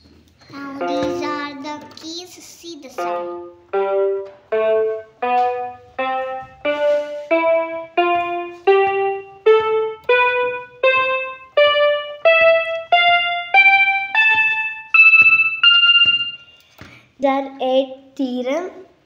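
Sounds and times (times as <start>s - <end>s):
toy keyboard notes in rising scale: 3.0s - 16.6s.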